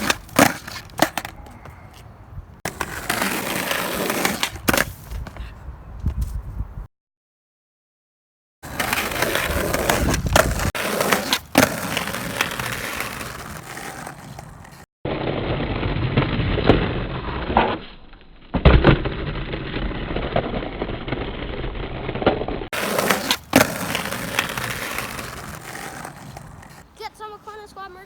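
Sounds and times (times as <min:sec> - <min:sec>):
skateboard clacking: 0:00.0 - 0:02.1, 0:22.8 - 0:28.0
skateboard wheels rolling on pavement: 0:00.0 - 0:06.9, 0:08.6 - 0:28.0.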